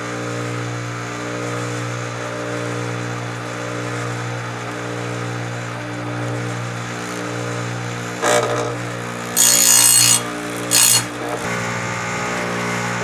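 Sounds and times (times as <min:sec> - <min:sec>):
sharpener motor humming: 0:08.2 - 0:12.7
grinding wheel on chain: 0:09.3 - 0:11.4.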